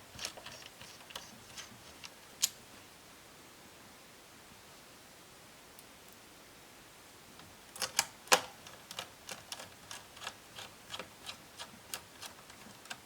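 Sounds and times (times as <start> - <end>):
laptop parts clicking: 7.8 - 13.0.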